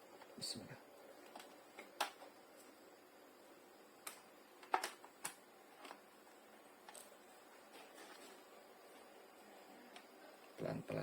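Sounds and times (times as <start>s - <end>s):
plastic laptop parts clicking: 4.0s - 6.0s.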